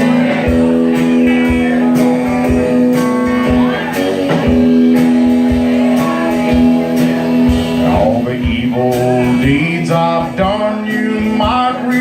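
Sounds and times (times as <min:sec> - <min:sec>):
guitar over steady beat: 0:00.0 - 0:12.0.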